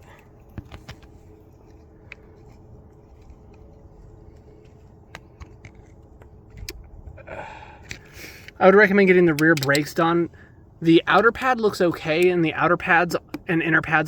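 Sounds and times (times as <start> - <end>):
faint hum: 0.0 - 14.0
low steady rumble: 0.0 - 14.0
camera handling clicks and knocks: 9.3 - 10.0.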